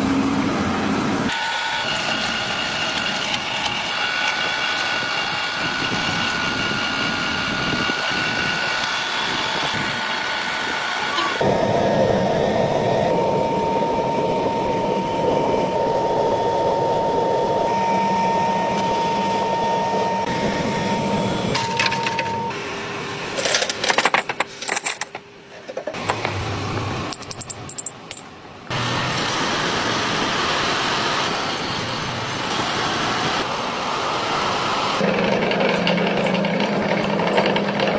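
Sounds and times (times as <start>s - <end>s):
metalworking machine whining: 0.0s - 37.9s
sharp metallic clicks and clinks: 27.0s - 28.4s.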